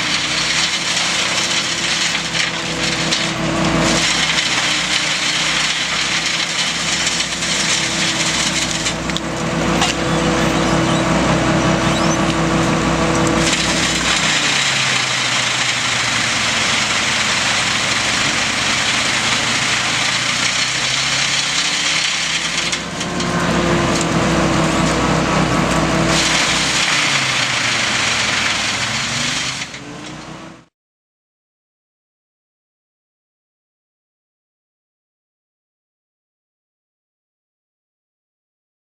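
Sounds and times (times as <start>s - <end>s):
diesel engine running: 0.0s - 30.7s
wood cracking in chipper: 0.0s - 30.7s.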